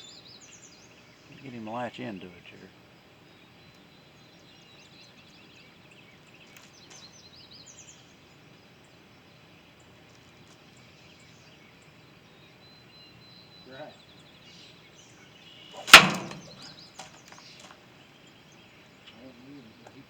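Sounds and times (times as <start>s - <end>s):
faint steady hiss: 0.0s - 15.2s.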